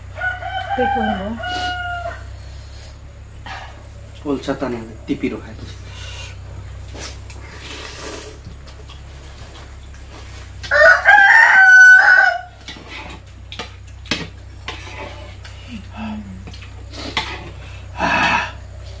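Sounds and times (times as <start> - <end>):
rooster crowing: 0.0 - 2.9, 10.6 - 13.2.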